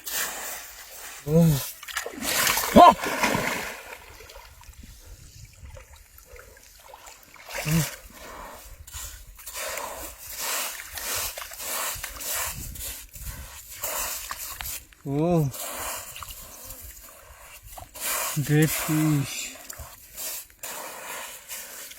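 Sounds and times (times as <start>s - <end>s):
water splashing and sloshing: 0.0s - 15.0s
person exclaiming oh: 2.6s - 3.1s.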